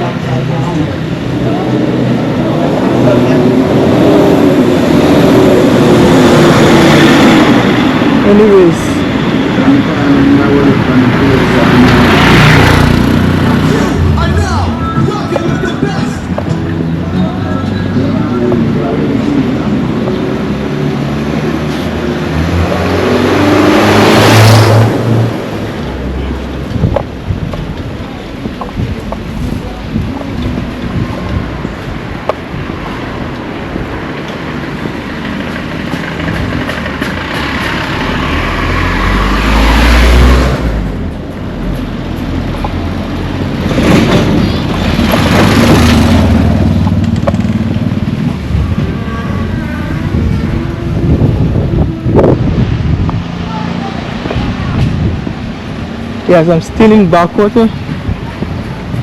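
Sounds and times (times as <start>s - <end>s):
motor vehicle passing: 0.0s - 59.0s
vehicle driving past: 32.5s - 56.3s.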